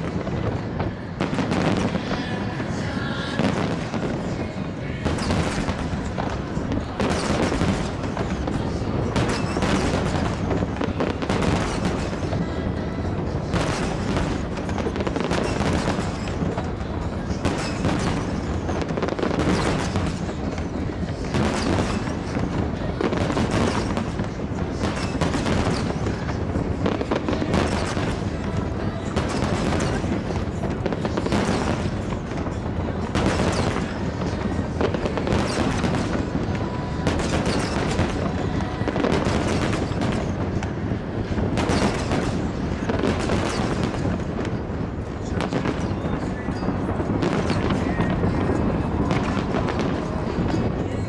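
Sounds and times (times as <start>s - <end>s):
fireworks booming and crackling: 0.0s - 51.0s.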